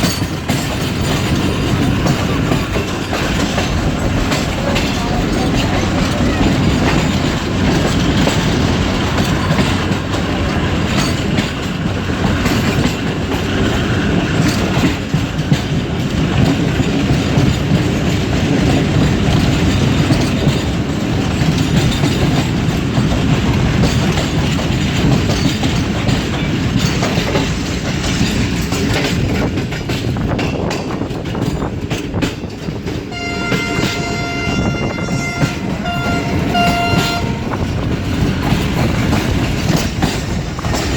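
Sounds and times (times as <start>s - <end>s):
train wheels clattering over rails: 0.0s - 40.9s
train horn blast: 33.1s - 38.0s.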